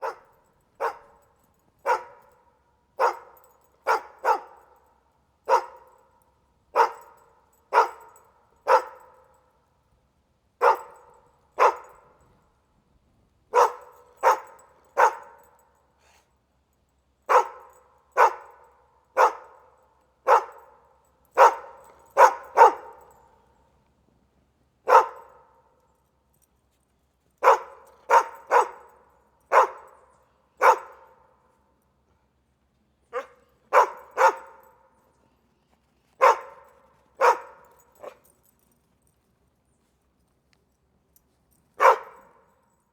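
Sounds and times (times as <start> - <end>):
dog barking: 0.0 - 1.2, 1.8 - 2.4, 3.0 - 4.8, 5.5 - 6.0, 6.8 - 9.2, 10.6 - 12.1, 13.5 - 15.5, 17.3 - 20.8, 21.4 - 23.2, 24.9 - 25.6, 27.4 - 30.0, 30.6 - 31.2, 33.1 - 34.7, 36.2 - 38.2, 41.8 - 42.4
chain rattling: 0.2 - 9.6, 13.6 - 16.2, 20.4 - 23.6, 36.2 - 39.3.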